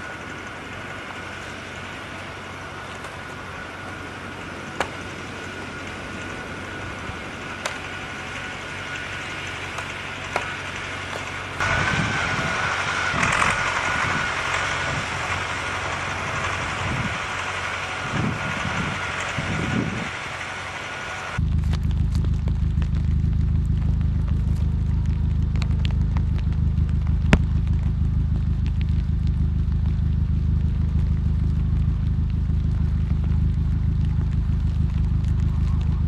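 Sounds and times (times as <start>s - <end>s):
low thuds: 21.4s - 36.0s.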